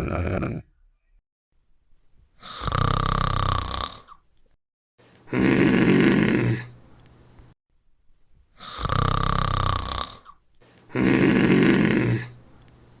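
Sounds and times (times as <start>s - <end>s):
man snoring loudly: 0.0s - 0.7s, 2.4s - 4.1s, 5.3s - 6.7s, 8.6s - 10.3s, 10.9s - 12.4s.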